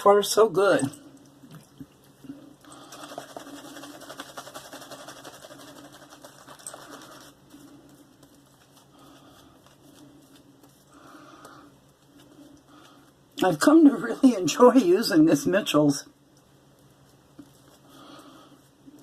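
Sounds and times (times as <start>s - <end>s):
shaving brush swishing on soap: 3.1s - 10.9s.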